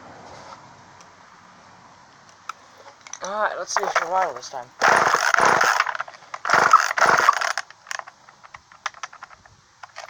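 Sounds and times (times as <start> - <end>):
chainsaw engine pull-start bursts: 3.7 - 8.1.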